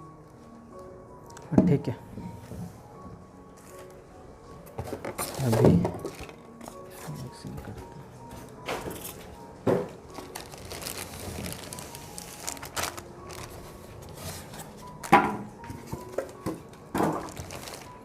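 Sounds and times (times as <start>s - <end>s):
faint background music: 0.0s - 18.0s
packaging rustling: 4.8s - 8.0s, 10.0s - 18.0s.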